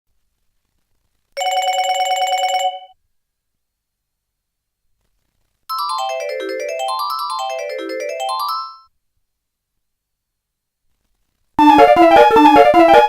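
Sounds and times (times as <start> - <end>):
melodic phone ringtone: 1.4 - 3.0, 5.7 - 8.9, 11.6 - 13.0
trilling electronic phone ring: 1.4 - 3.0.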